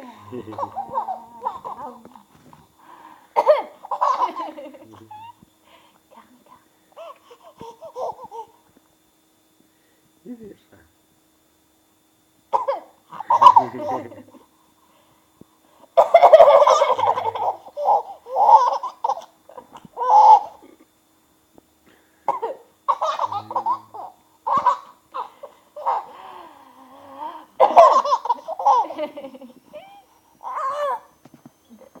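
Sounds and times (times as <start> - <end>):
baby laughing: 0.4 - 2.0, 3.4 - 5.3, 7.0 - 8.6, 12.5 - 14.3, 16.0 - 20.8, 22.3 - 26.3, 27.1 - 31.0.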